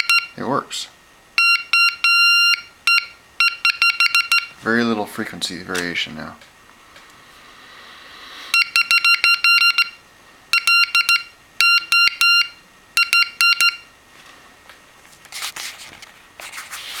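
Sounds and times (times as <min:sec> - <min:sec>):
morse code high tone: 0:00.0 - 0:00.4, 0:01.4 - 0:04.6, 0:08.5 - 0:13.9
rustling noise: 0:14.1 - 0:17.0.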